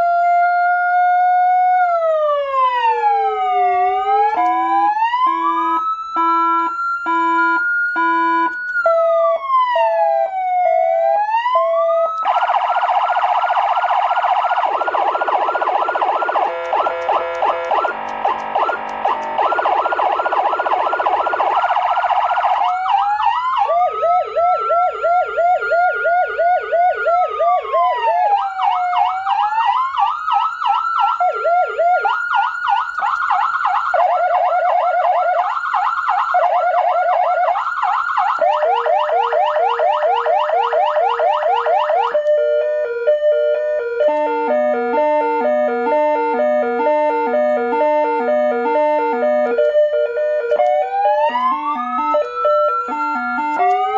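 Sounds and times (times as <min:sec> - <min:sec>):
electronic siren cycling tones: 0:11.4 - 0:53.9.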